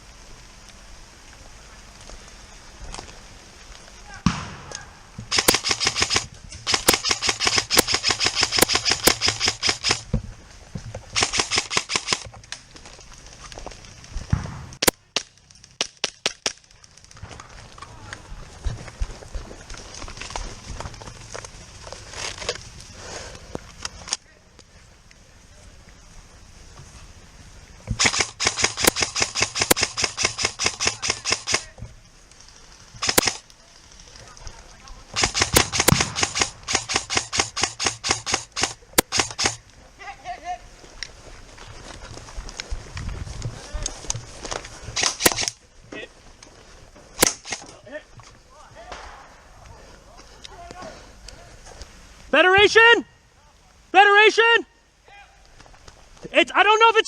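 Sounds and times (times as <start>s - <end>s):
airsoft guns firing: 4.2s - 10.1s, 11.2s - 12.3s, 14.3s - 16.6s, 28.0s - 31.8s, 33.0s - 33.4s, 35.1s - 39.6s, 44.9s - 45.6s, 47.2s - 47.8s.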